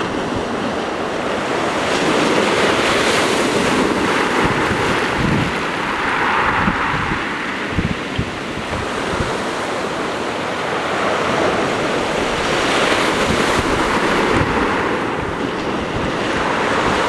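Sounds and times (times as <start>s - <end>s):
waves breaking on shore: 0.0s - 17.0s
wind buffeting microphone: 0.0s - 17.0s.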